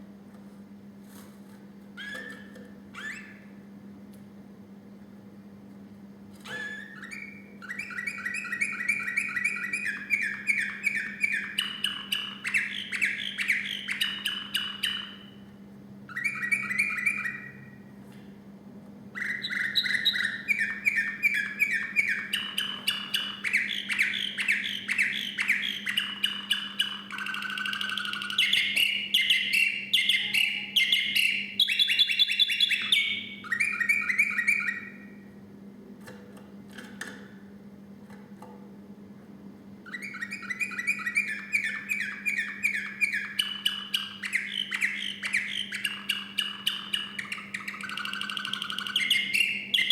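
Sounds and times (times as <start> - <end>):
canary singing trills: 2.0 - 3.6, 6.4 - 17.9, 19.1 - 35.3, 39.8 - 49.9.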